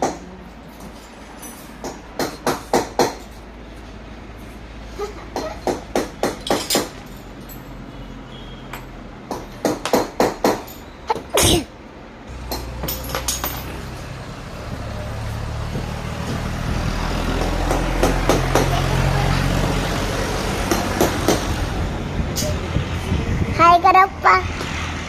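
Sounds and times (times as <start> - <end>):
vehicle engine starting and running: 10.7 - 25.0
sharp knocks and clicks: 17.3 - 18.8.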